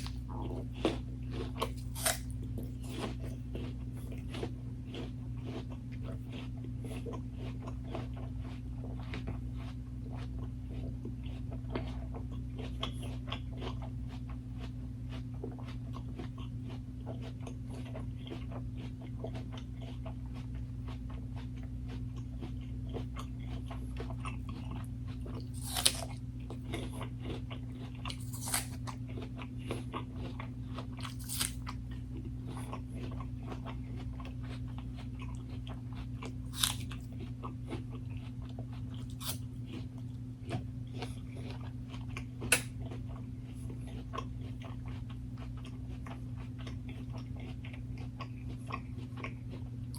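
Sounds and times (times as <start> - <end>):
person chewing and biting food: 0.0 - 49.9.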